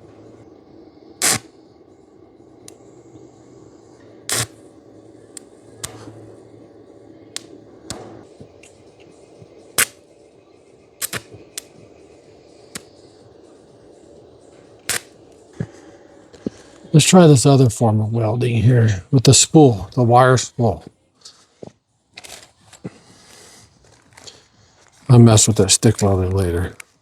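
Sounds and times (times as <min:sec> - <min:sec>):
steady hum: 0:00.0 - 0:27.0
welding arc crackles: 0:00.0 - 0:27.0.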